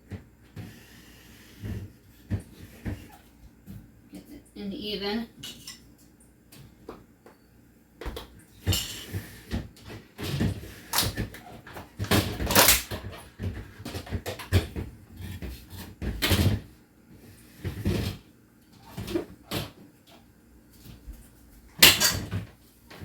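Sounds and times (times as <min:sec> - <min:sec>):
refrigerator shelves knocking and clattering: 0:08.0 - 0:16.8, 0:17.6 - 0:19.9, 0:20.9 - 0:23.0.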